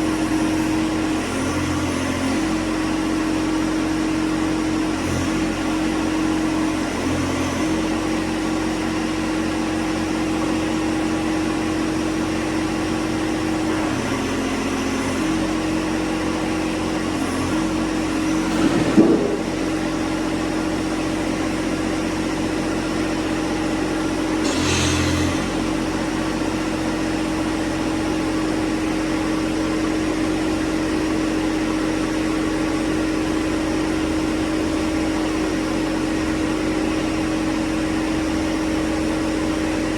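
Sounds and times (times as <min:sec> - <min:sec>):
tractor diesel engine running: 0:00.0 - 0:39.9
short clunk: 0:18.4 - 0:19.8, 0:24.4 - 0:25.6.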